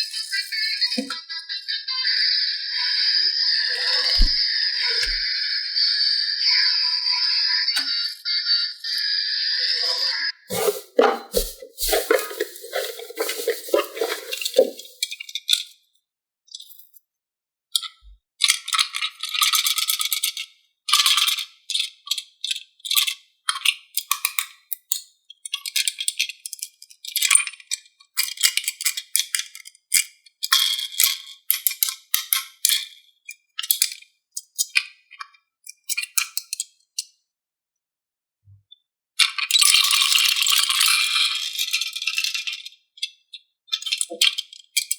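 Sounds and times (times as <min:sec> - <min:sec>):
plastic toy pieces clattering: 0:10.5 - 0:15.2.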